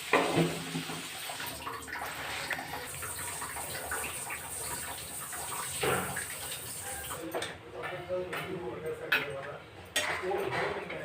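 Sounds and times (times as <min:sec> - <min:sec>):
paneer sizzling in hot oil: 0:00.0 - 0:07.2.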